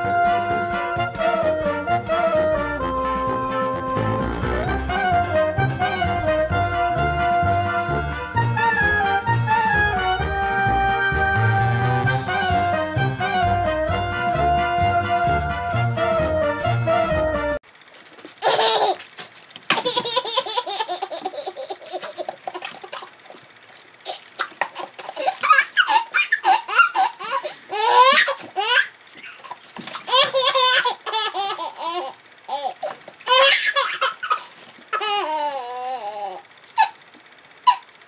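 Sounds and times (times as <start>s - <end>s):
music: 0.0s - 17.6s
baby laughing: 18.4s - 23.4s, 24.0s - 37.9s.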